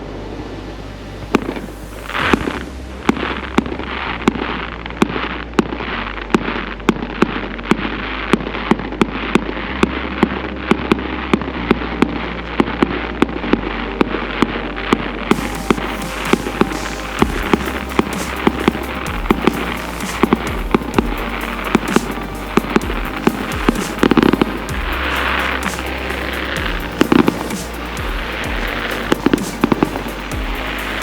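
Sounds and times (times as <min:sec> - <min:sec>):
continuous hiss: 0:00.0 - 0:31.0
fireworks bangs: 0:15.3 - 0:31.0.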